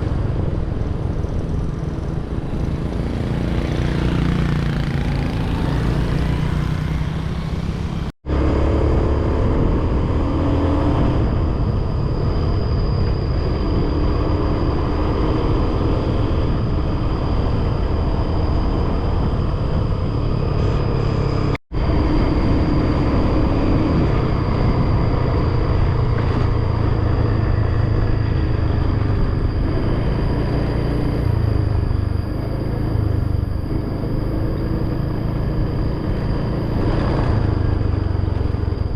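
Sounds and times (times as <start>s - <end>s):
road noise: 0.0s - 38.9s
motor scooter engine: 1.0s - 9.8s.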